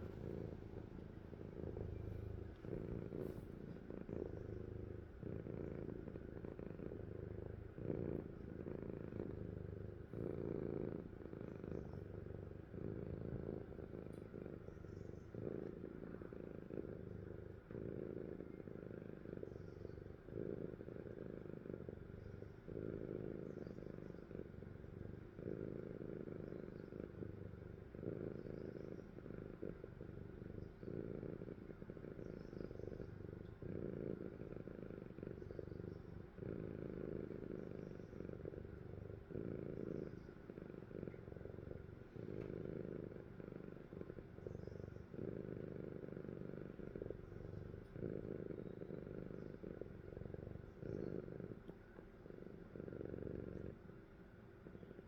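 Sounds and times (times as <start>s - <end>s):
cat snoring: 0.0s - 55.0s.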